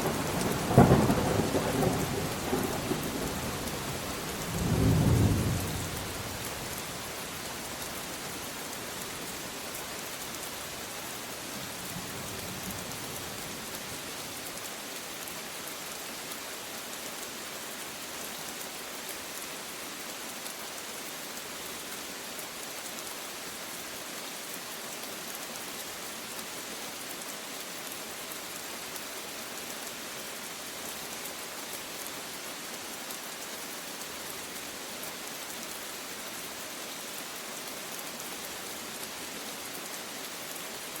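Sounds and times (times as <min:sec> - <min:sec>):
steady rain falling: 0:00.0 - 0:41.0.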